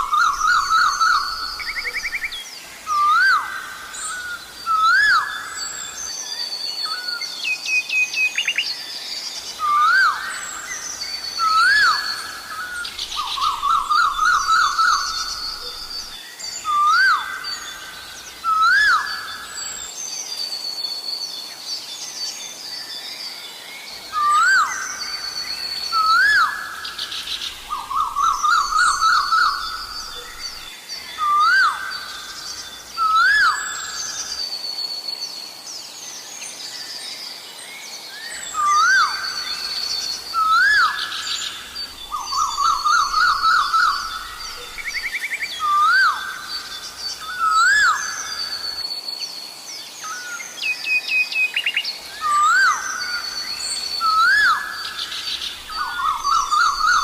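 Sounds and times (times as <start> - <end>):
small birds chirping: 0.0 - 57.0
bird calling loud rising whistles: 24.1 - 34.5, 38.2 - 48.8, 51.6 - 57.0.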